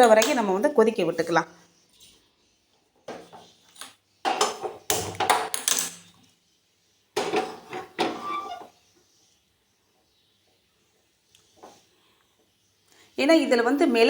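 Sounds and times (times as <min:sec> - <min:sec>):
metal utensils scraping a pan: 0:07.2 - 0:08.8.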